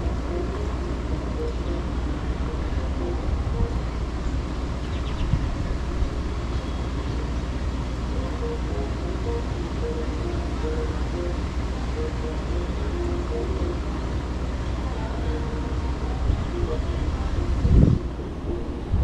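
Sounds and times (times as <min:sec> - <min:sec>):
city ambience: 0:00.0 - 0:19.0
wind buffeting microphone: 0:02.8 - 0:06.5, 0:16.2 - 0:19.0
faint high chirp: 0:06.5 - 0:07.0.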